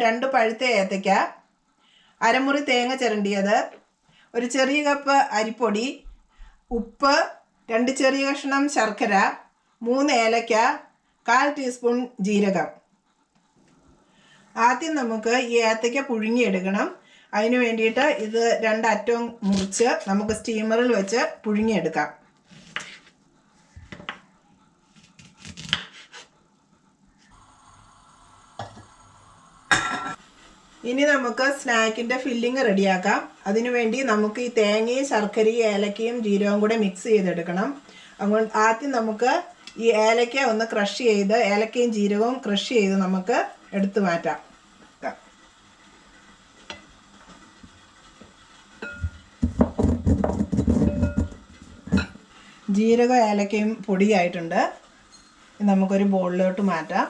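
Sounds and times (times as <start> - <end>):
faint steady hum: 0.0 - 25.6, 26.3 - 49.8
knife cutting on wooden board: 25.0 - 26.3.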